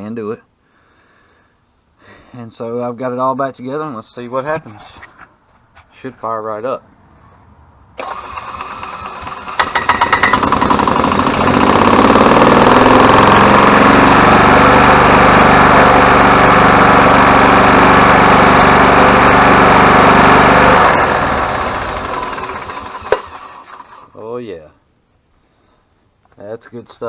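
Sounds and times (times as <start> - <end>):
golf cart engine starting and running: 8.0 - 24.2.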